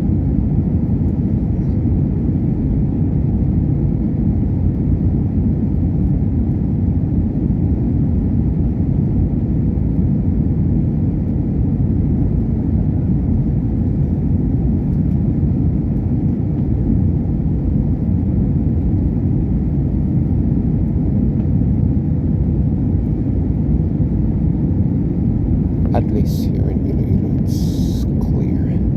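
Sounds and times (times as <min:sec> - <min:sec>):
airliner cabin engine rumble: 0:00.0 - 0:28.9.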